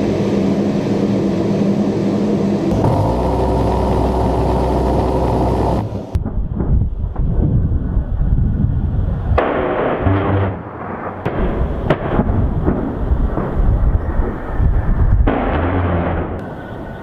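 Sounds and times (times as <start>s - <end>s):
booming explosions: 5.7s - 16.4s.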